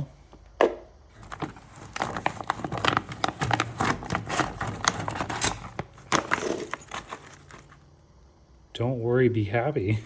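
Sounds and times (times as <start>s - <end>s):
loose parts being rummaged: 1.2s - 7.8s.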